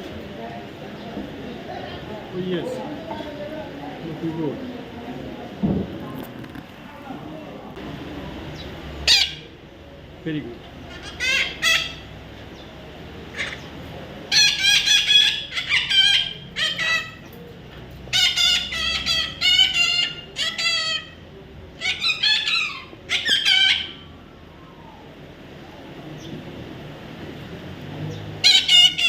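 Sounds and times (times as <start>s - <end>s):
parrot squawking: 9.0s - 9.5s, 10.9s - 12.1s, 13.3s - 13.7s, 14.3s - 17.2s, 18.1s - 21.2s, 21.8s - 24.1s, 28.4s - 29.0s.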